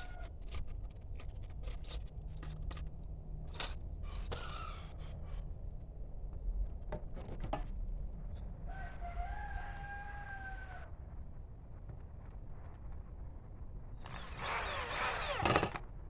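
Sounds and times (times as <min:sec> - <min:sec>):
rooster crowing: 0:08.7 - 0:10.9.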